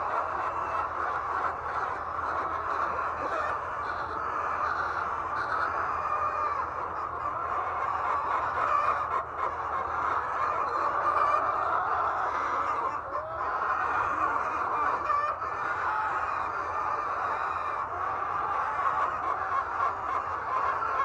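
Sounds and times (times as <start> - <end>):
hens clucking: 0.0 - 21.0.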